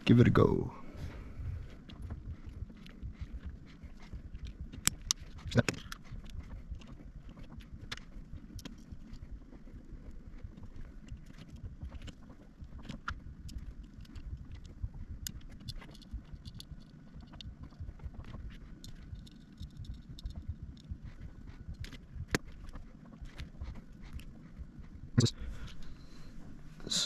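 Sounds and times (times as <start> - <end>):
plastic parts clicking and rattling: 1.7 - 9.2, 10.5 - 24.3.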